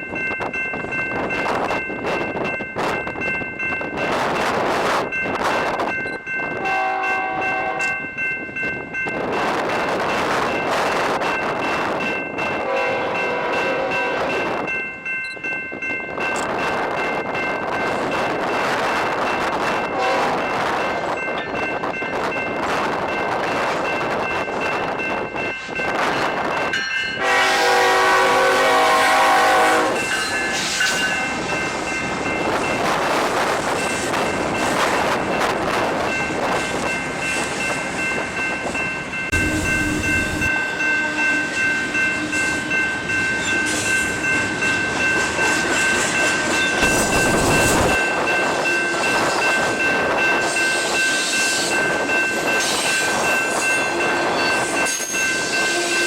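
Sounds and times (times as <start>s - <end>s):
train wheels clattering on rails: 0.0s - 56.0s
train horn blast: 6.6s - 8.0s, 12.6s - 14.4s, 19.9s - 20.4s, 27.2s - 31.4s, 39.4s - 42.8s, 55.6s - 56.0s.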